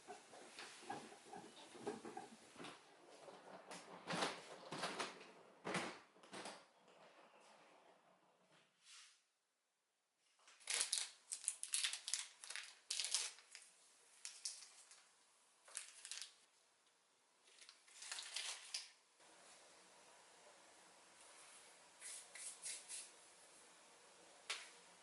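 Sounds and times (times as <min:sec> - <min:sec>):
crinkling and rustling: 0:00.1 - 0:08.7, 0:10.3 - 0:16.5, 0:17.4 - 0:19.0.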